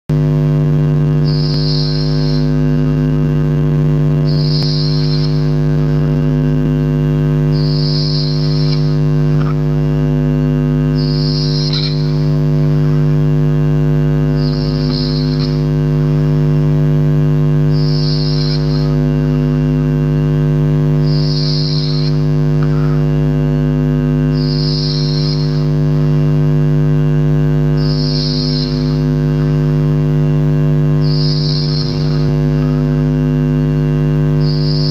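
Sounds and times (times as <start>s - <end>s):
loud electrical hum: 0.1s - 34.9s.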